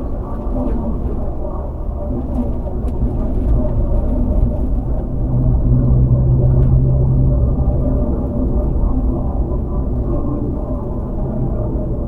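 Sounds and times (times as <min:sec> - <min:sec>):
car engine and road rumble: 0:00.0 - 0:12.0
low hum: 0:00.0 - 0:12.0.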